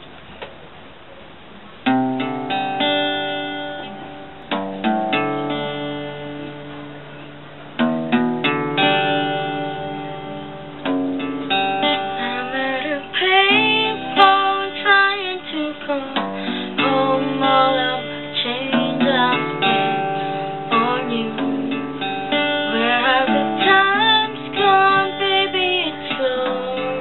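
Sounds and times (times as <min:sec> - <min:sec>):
guitar chords ringing: 0:01.8 - 0:27.0
person singing: 0:11.8 - 0:27.0.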